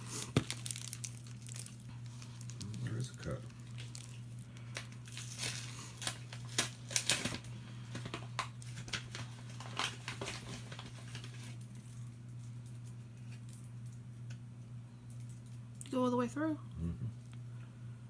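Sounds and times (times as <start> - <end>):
wrapper crinkling: 0.0 - 12.0.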